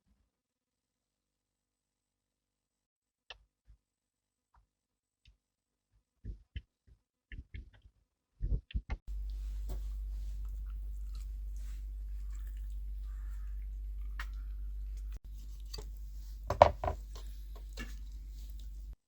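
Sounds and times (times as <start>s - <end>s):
steady low hum: 9.1s - 19.0s.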